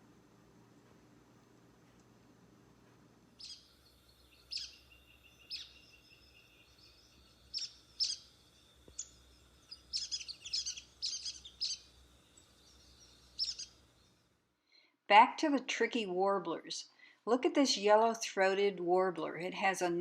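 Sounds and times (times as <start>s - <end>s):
bird high chirps: 3.4s - 14.3s.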